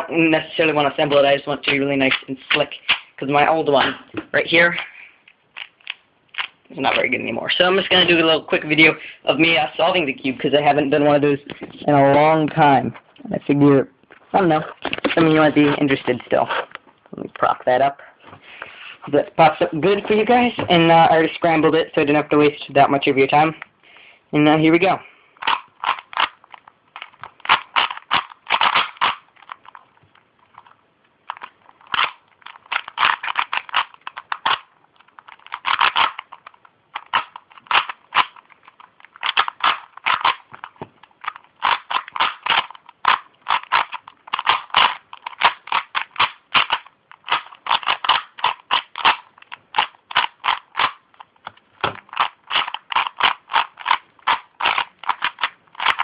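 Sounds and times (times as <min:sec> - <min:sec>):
puzzle cube layers clicking: 0:25.4 - 0:29.8, 0:31.3 - 0:56.0.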